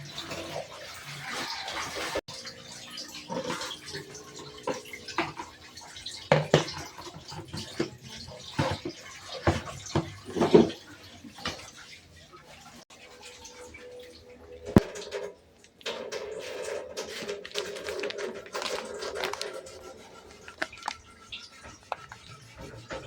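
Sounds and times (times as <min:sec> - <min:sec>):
water running: 0:00.0 - 0:23.0
knocks and clatters of objects: 0:06.3 - 0:11.7, 0:14.7 - 0:23.0.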